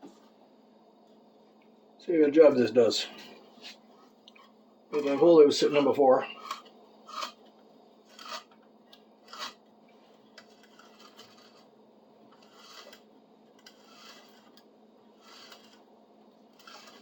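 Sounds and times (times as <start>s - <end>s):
drill bit rasping into wood: 13.6s - 14.4s.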